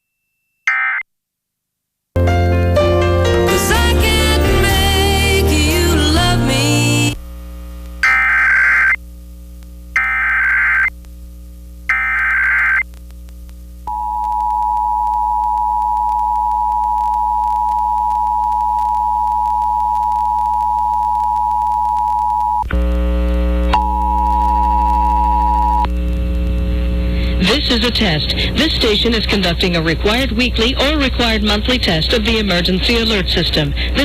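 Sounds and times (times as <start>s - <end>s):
loud electrical hum: 3.6s - 34.0s
screeching data tone bursts: 8.0s - 9.0s, 10.0s - 10.9s, 11.9s - 12.8s.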